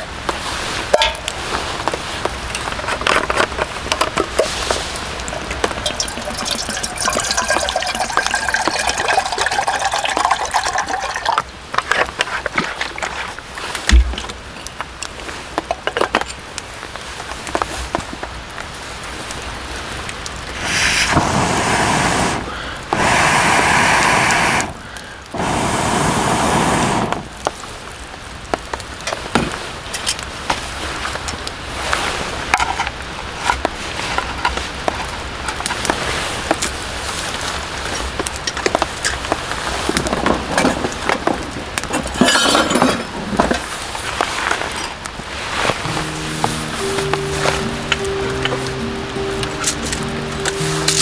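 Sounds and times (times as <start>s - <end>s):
raindrops tapping on tent fabric: 0.0s - 22.2s, 26.7s - 51.0s
loud hissing bursts: 20.5s - 27.4s.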